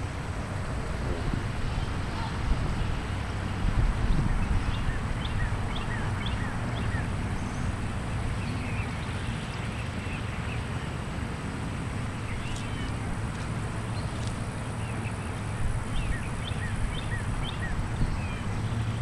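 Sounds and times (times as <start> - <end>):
small birds chirping: 12.1 - 19.0.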